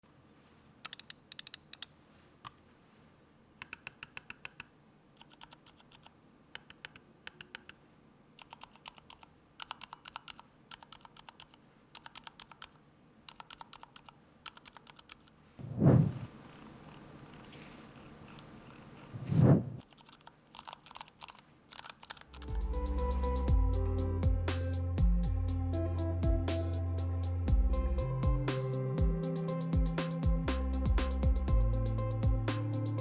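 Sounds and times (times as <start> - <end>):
keyboard keystrokes: 3.6 - 7.8.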